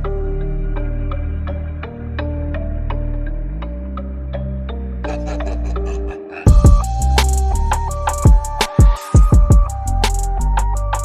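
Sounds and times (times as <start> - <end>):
electronic music with drum beat: 5.1 - 11.0.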